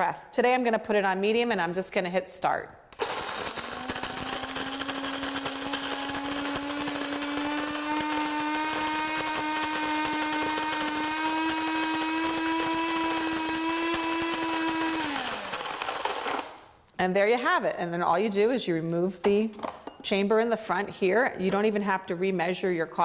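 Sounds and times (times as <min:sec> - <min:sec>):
beans crackling as crushed: 0:02.9 - 0:16.7
coffee grinder motor whine: 0:03.0 - 0:16.6.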